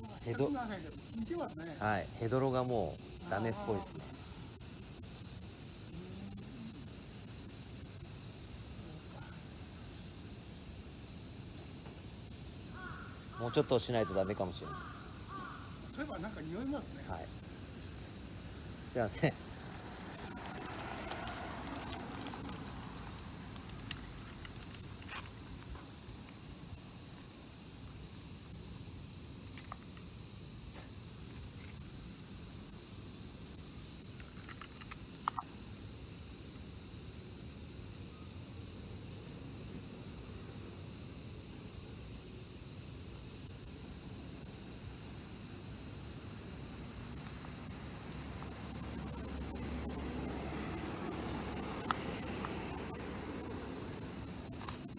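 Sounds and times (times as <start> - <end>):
insect chorus chirring: 0.0 - 54.9
faint clicks: 34.2 - 35.5, 51.8 - 53.0.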